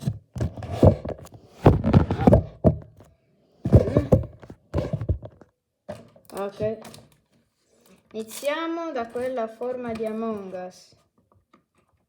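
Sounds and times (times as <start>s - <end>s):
fidget toys knocking: 3.7s - 5.4s.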